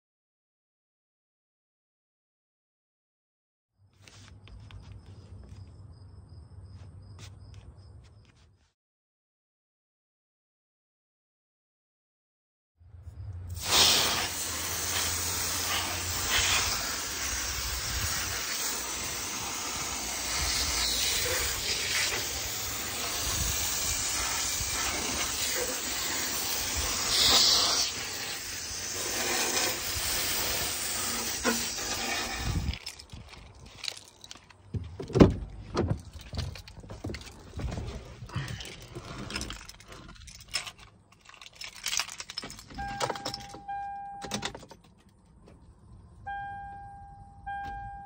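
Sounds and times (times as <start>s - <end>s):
steady hiss: 13.6s - 32.7s.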